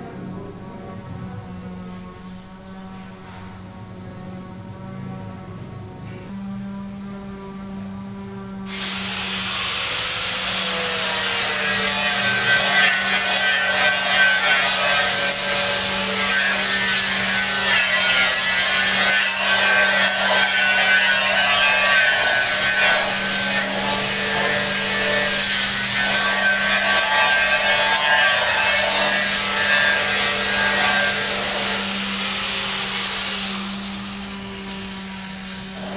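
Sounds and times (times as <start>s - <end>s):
power tool grinding: 8.7s - 35.9s.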